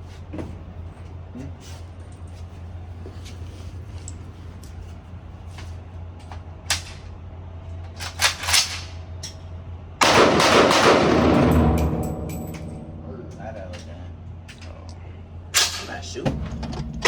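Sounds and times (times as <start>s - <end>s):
gunshots: 10.0s - 12.2s.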